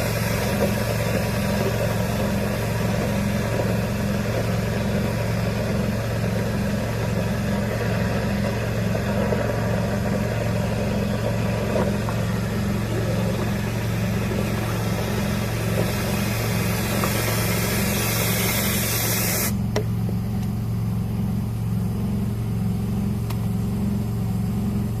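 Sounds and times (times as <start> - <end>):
motor humming: 0.0 - 20.6
rushing air hiss: 12.2 - 19.6.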